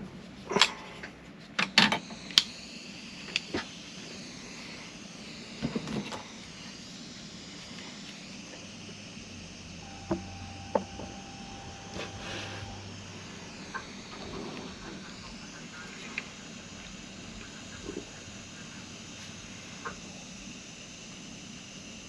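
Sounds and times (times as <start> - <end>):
low hum: 2.2 - 21.2
faint steady tone: 6.2 - 21.1.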